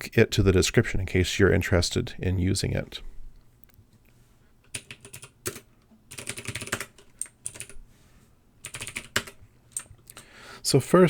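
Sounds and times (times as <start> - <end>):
computer keyboard typing: 4.7 - 7.8, 8.6 - 9.9.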